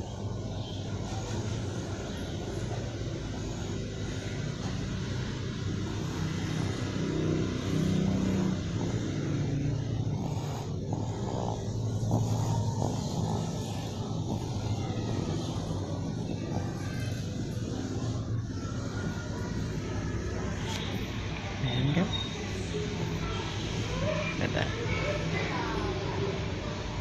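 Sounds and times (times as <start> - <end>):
child snoring: 0.0 - 21.0.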